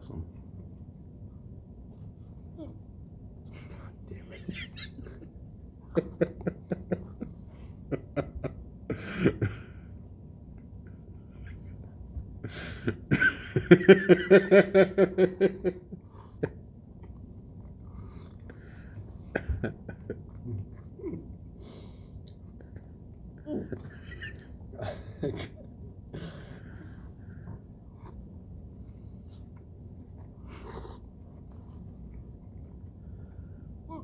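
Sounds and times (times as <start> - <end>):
rapid pulsing laughter: 4.1 - 9.8.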